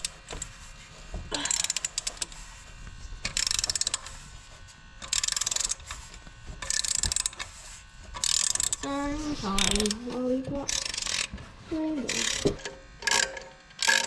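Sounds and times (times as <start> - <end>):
ratchet wrench clicking: 1.4 - 2.4, 3.2 - 4.2, 5.0 - 6.0, 6.6 - 7.5, 8.2 - 8.9, 9.6 - 10.0, 10.7 - 11.3, 12.1 - 14.0.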